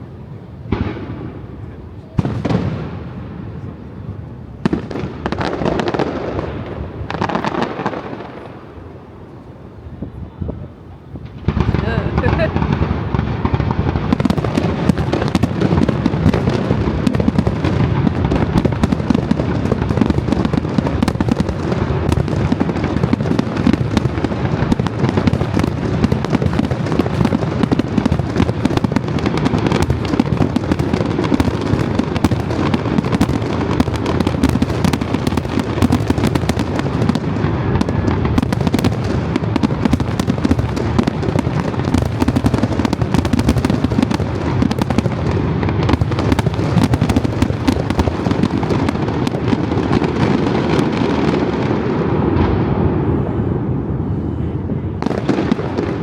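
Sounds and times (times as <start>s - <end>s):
fireworks bangs: 0.0s - 56.0s.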